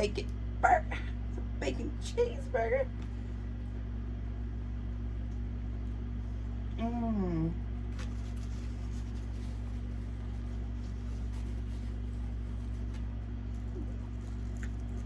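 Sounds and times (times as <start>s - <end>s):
low electrical hum: 0.0s - 15.0s
person chewing close to microphone: 7.9s - 15.0s.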